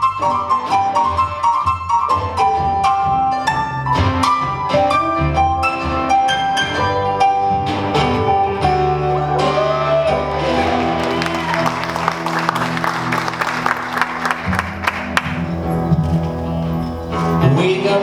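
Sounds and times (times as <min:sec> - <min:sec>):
acoustic band playing: 0:00.0 - 0:18.0.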